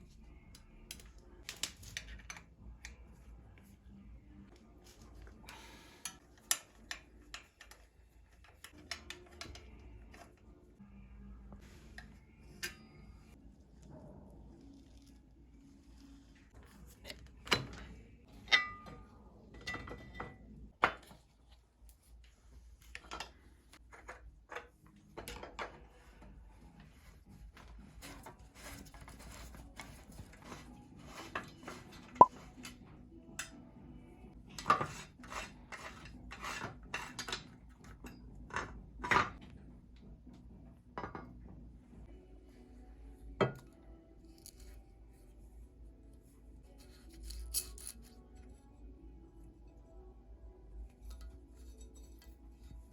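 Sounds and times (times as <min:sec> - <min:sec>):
metal tools clinking: 0:47.0 - 0:48.2.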